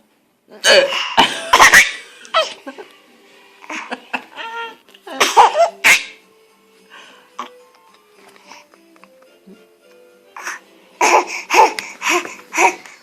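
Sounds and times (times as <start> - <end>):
baby laughing: 1.2 - 2.6, 3.6 - 6.2, 11.0 - 12.9.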